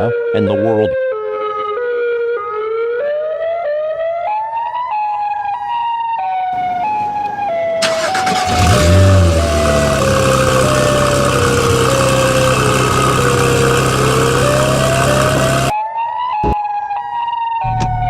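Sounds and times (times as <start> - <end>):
siren wailing: 6.5 - 18.0
car engine starting and idling: 6.6 - 15.7.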